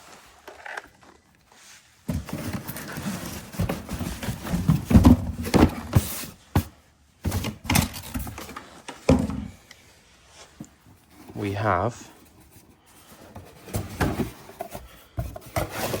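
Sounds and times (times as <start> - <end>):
cardboard packaging rustling: 0.0 - 9.1
hollow knocks and clunks: 3.4 - 8.3, 9.0 - 9.6.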